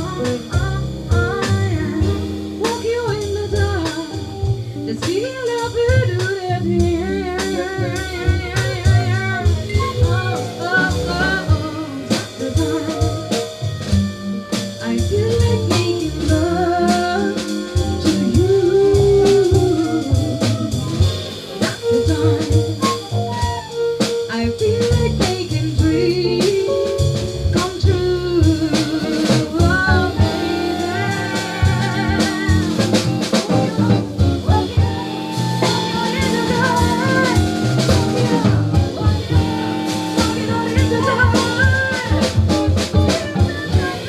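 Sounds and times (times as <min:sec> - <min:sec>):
drum kit: 0:00.0 - 0:44.0
jazz band playing: 0:00.0 - 0:44.0
voice singing with vibrato: 0:29.0 - 0:42.3.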